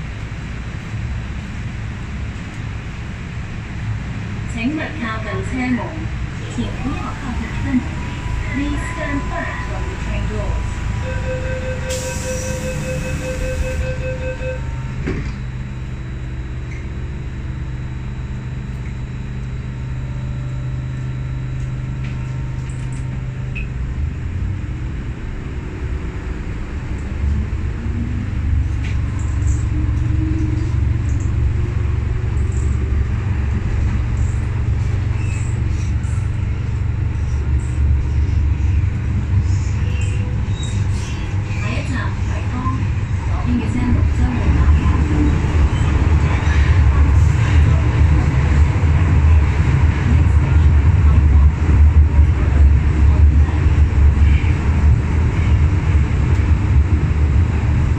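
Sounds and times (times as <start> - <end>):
train cabin rumble: 0.0 - 57.9
traction motors whining: 6.4 - 24.8, 25.5 - 48.1
train door warning beeps: 6.6 - 23.8
train doors shutting thud: 15.0 - 15.4.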